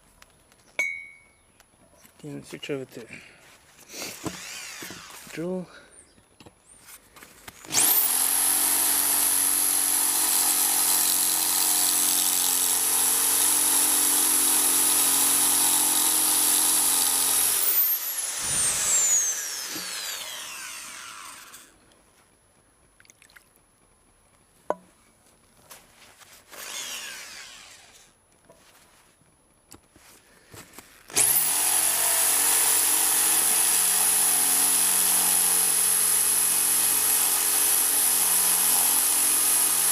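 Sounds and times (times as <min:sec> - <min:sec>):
electric hammer drill running: 0:04.1 - 0:05.4, 0:07.6 - 0:21.7, 0:26.6 - 0:28.1, 0:31.1 - 0:39.9.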